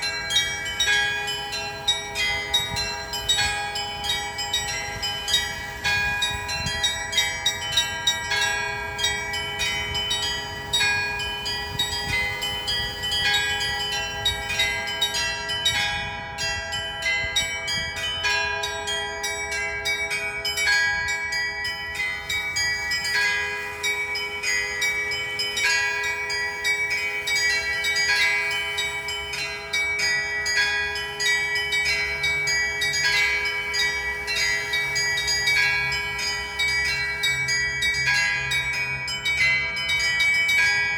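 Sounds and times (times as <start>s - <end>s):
large bells ringing: 0.0s - 40.9s
small church bells pealing: 0.0s - 40.9s.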